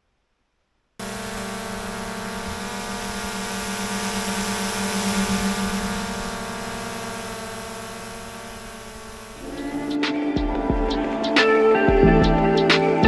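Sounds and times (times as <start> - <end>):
drone propellers whining: 1.0 - 10.1.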